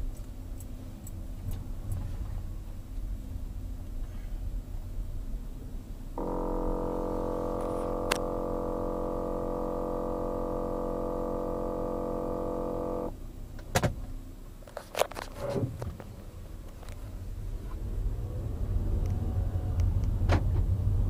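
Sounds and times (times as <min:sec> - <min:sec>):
loud car buzz: 0:06.2 - 0:13.1.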